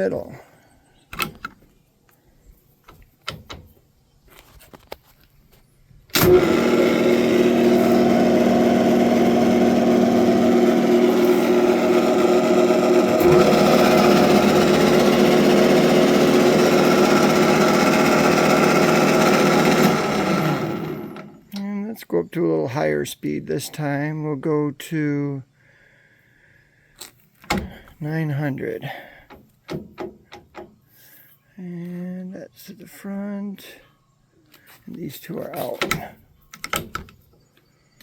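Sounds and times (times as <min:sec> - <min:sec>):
lathe switch clunk: 0:06.1 - 0:16.4
lathe gear hum and whine: 0:06.1 - 0:21.4
gear lever clicks: 0:35.6 - 0:37.2.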